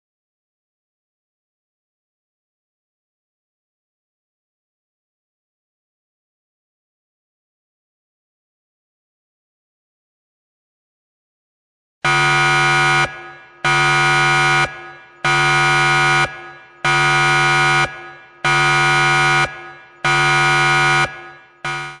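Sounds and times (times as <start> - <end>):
timer buzzer tone: 12.0 - 22.0.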